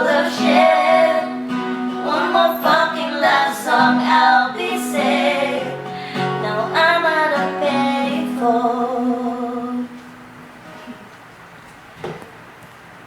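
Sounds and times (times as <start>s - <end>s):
voices singing: 0.0s - 10.1s
acoustic guitar: 0.0s - 12.5s.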